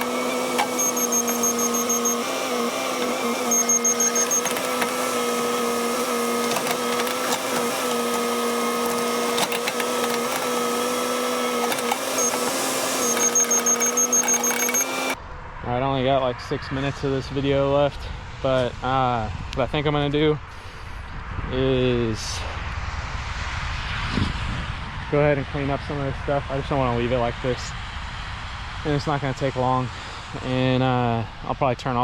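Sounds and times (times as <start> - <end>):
excavator high whine: 0.0 - 15.2.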